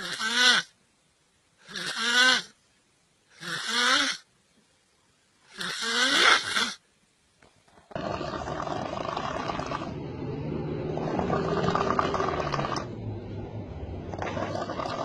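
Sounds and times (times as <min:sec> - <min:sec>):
person snoring heavily: 0:07.9 - 0:15.0.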